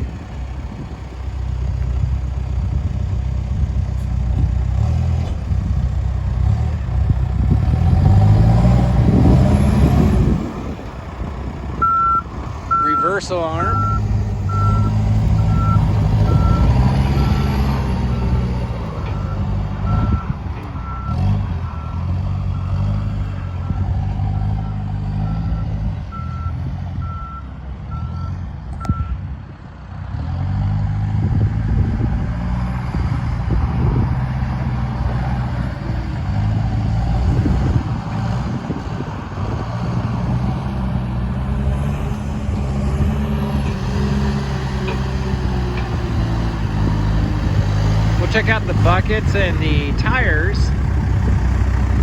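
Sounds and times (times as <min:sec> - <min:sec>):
diesel engine running: 0:00.0 - 0:52.0
reverse alarm beeping: 0:11.8 - 0:17.4.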